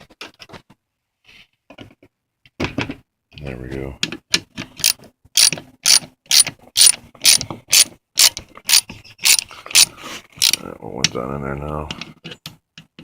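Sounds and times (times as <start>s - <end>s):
ratchet wrench clicking: 4.8s - 10.6s.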